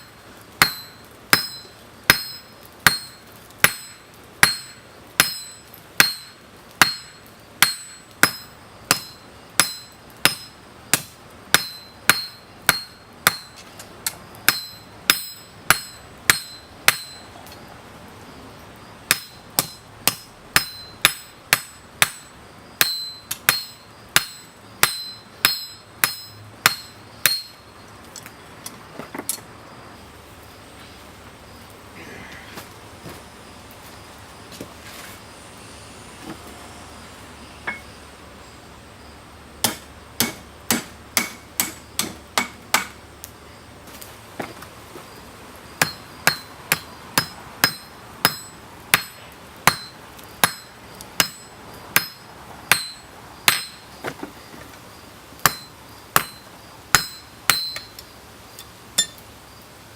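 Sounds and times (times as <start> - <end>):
hammer striking steel on anvil: 0.0 - 13.6, 14.5 - 17.3, 19.1 - 27.6, 37.6 - 37.9, 39.6 - 43.0, 45.8 - 53.8, 55.4 - 58.0, 59.0 - 59.2.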